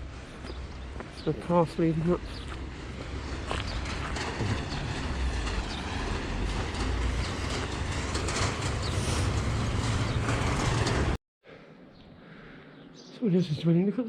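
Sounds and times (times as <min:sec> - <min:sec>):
wind buffeting microphone: 0:00.0 - 0:11.2
footsteps on rocky ground: 0:00.1 - 0:07.8.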